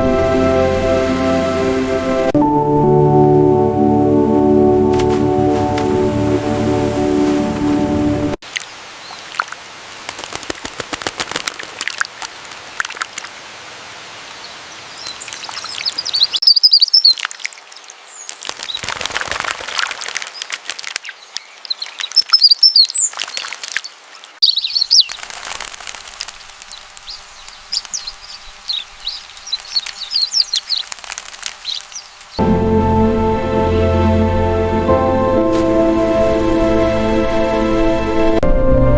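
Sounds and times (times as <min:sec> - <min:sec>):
birds chirping: 0:14.2 - 0:19.0, 0:20.2 - 0:32.4.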